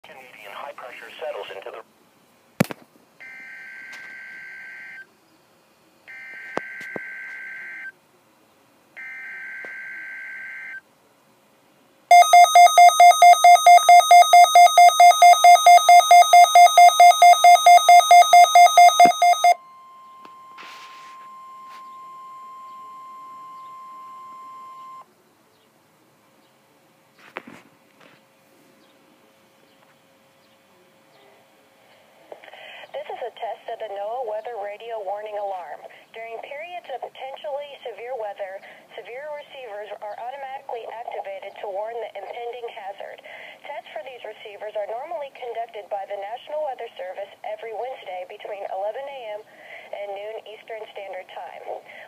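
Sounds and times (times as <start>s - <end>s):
steady warning alarm tone: 3.2s - 5.0s, 6.1s - 7.9s, 9.0s - 10.8s, 12.1s - 25.0s
rapid alert beeping: 12.1s - 20.6s.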